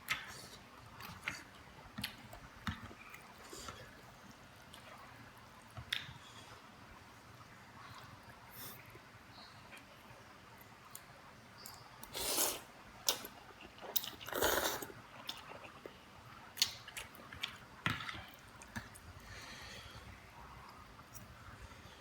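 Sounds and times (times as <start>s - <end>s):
chewing noodles: 12.1s - 16.0s.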